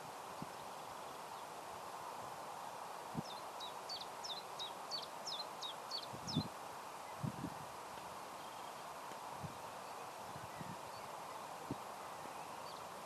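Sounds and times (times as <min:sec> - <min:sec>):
outdoor background noise: 0:00.0 - 0:13.0
small bird chirping: 0:03.2 - 0:07.3.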